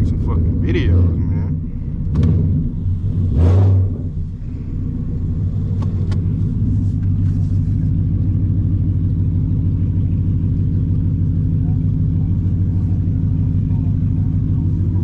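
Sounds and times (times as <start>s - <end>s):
car engine rumbling: 0.0s - 15.0s.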